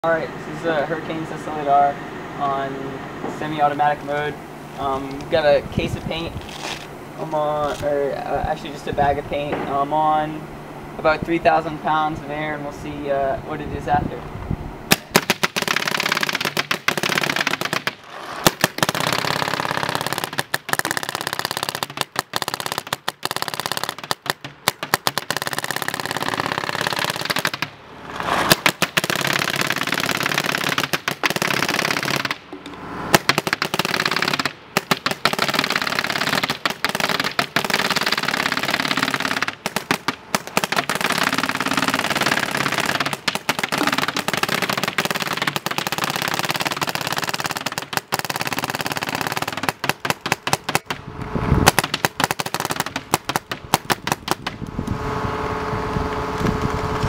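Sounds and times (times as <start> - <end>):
paintball marker firing: 14.9 - 51.0, 51.6 - 54.6.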